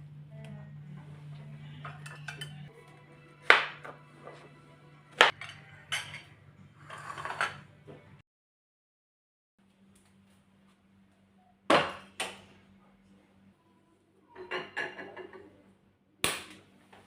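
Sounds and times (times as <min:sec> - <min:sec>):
steady low hum: 0:00.0 - 0:03.4
dishes and utensils clinking: 0:01.6 - 0:04.5, 0:05.1 - 0:08.1, 0:14.3 - 0:15.6.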